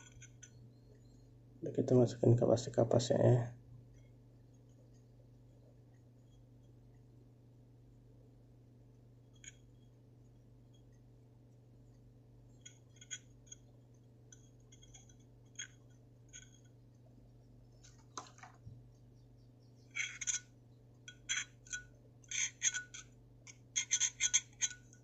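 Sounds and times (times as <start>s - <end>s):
scratching: 19.9s - 20.5s.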